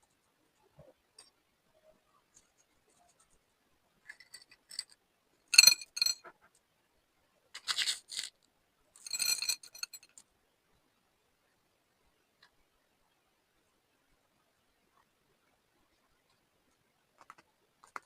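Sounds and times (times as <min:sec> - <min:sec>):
crisp clicking and clinking: 0:04.0 - 0:05.0, 0:05.6 - 0:06.2, 0:07.6 - 0:08.4, 0:09.0 - 0:10.2.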